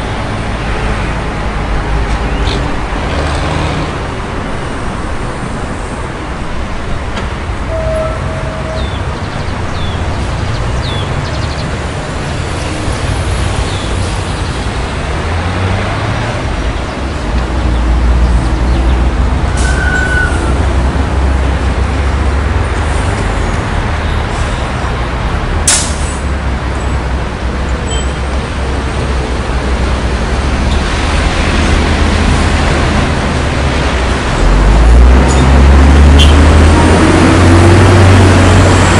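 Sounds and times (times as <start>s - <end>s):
road noise: 0.0s - 38.9s
large vehicle passing: 28.6s - 38.9s.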